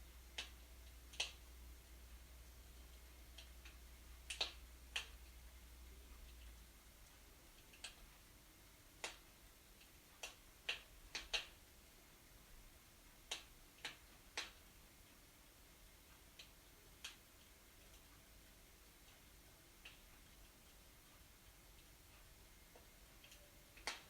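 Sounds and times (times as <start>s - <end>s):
fire crackling and popping: 3.4s - 5.4s, 9.0s - 11.6s, 22.6s - 24.0s.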